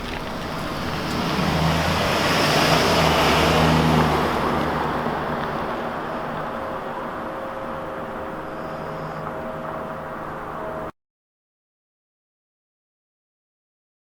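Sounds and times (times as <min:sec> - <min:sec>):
vehicle driving past: 0:00.0 - 0:10.9.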